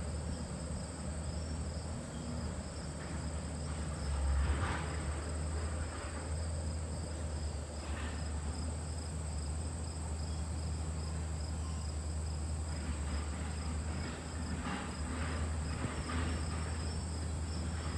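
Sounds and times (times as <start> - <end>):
crickets chirping: 0.0 - 17.9.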